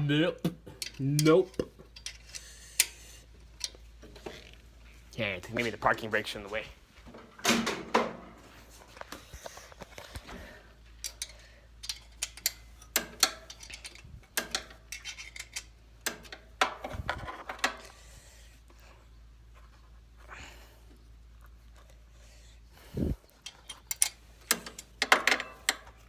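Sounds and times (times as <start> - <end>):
hand tools clanking on metal: 0.4 - 4.5, 10.4 - 17.8, 23.4 - 26.0.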